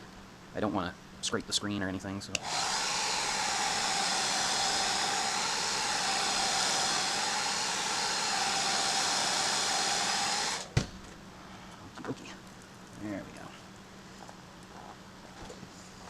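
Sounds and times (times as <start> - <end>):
hot-air blower running with whine: 2.4 - 10.8.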